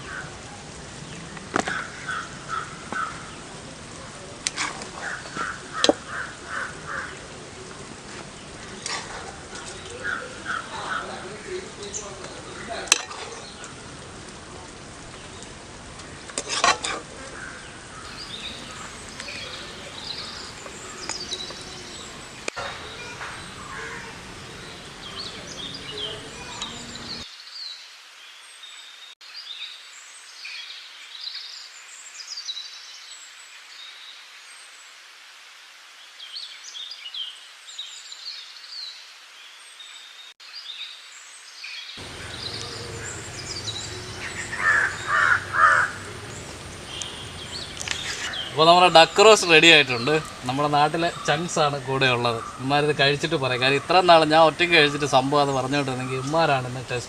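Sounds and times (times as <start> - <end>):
steady background noise: 0.0 - 27.3, 42.0 - 57.0
small birds chirping: 0.0 - 34.2, 36.0 - 57.0.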